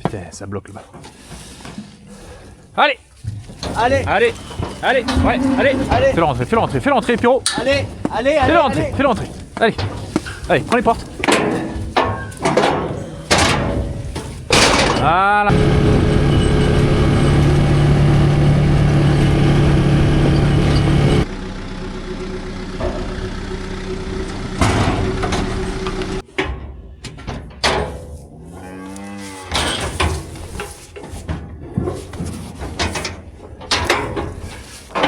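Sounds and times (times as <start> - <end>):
engine hum: 2.2 - 26.3
metal gates clanking: 3.2 - 21.3, 24.6 - 28.2, 29.5 - 35.0
cattle mooing: 3.6 - 14.8, 28.3 - 30.2.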